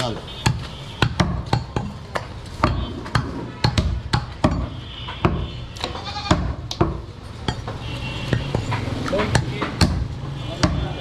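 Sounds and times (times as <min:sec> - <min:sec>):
cleaver chopping meat: 0:00.4 - 0:05.5, 0:06.3 - 0:11.0
animal bleating: 0:05.9 - 0:06.4.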